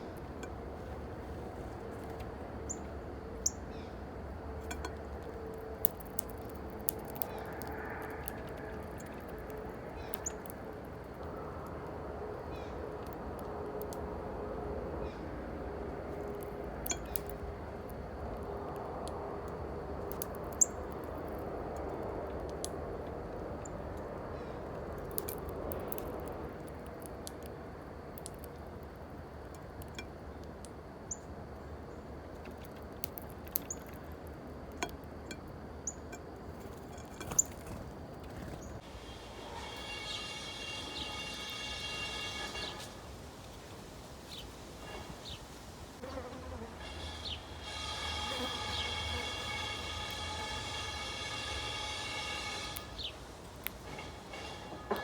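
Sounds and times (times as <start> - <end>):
songbirds chipping: 0.0 - 55.0
steady buzz: 38.8 - 43.2, 46.3 - 55.0.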